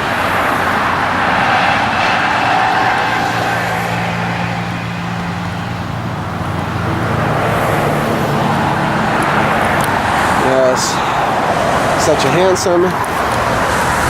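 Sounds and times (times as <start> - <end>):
aircraft engine drone: 0.0 - 14.0.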